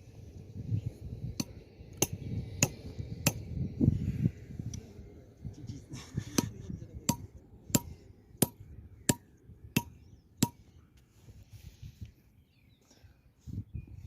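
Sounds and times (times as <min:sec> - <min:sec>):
hammer striking metal: 0:07.1 - 0:10.6.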